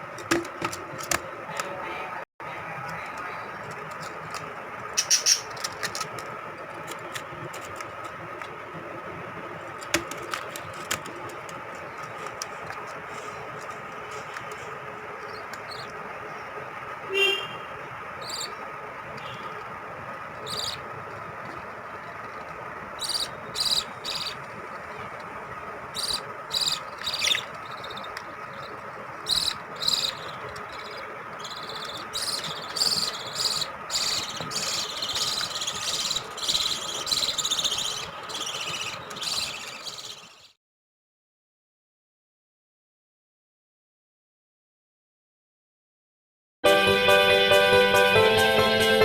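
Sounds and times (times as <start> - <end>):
steady background hum: 0.0 - 40.5
lovebirds chirping: 4.9 - 5.8, 13.0 - 40.6.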